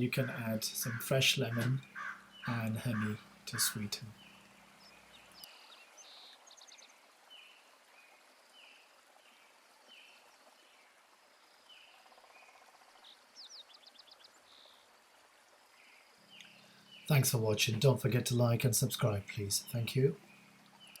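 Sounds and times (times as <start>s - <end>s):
bird chirping: 0.0s - 10.9s, 11.6s - 14.8s, 15.8s - 21.0s
low background hiss: 0.0s - 21.0s.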